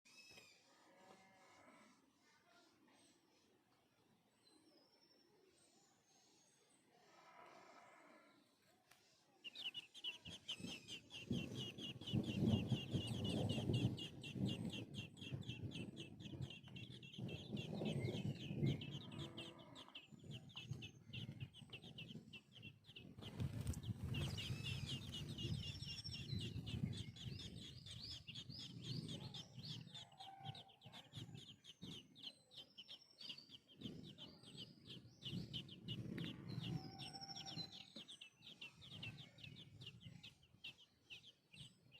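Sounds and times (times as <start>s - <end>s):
baby birds chirping: 8.5s - 41.9s.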